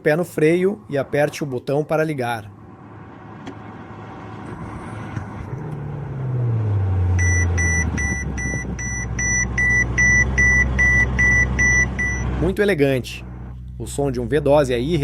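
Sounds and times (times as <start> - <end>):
car engine starting and idling: 0.1 - 15.0
dashboard warning chime beeping: 7.2 - 12.4.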